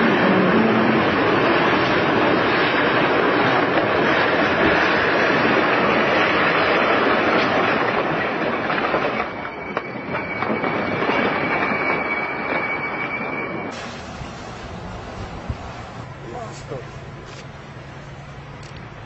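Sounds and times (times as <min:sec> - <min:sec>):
train wheels clattering on rails: 0:00.0 - 0:16.8
high wheel squeal: 0:09.1 - 0:17.5.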